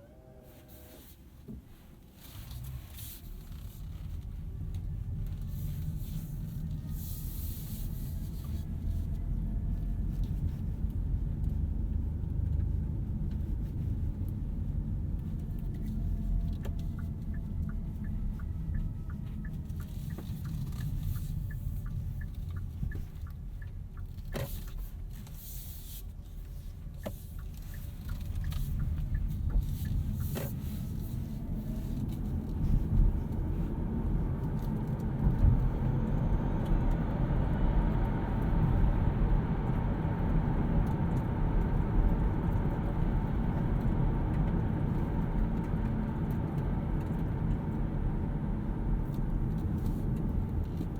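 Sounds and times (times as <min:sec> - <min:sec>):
road and tyre rumble: 0:00.0 - 0:50.9
light evenly spaced ticks: 0:15.4 - 0:32.6.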